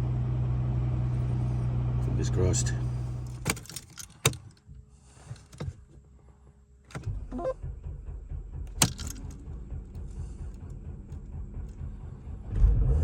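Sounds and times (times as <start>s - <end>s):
engine starting and idling: 2.2s - 13.0s
jump starter clicks: 8.6s - 9.5s.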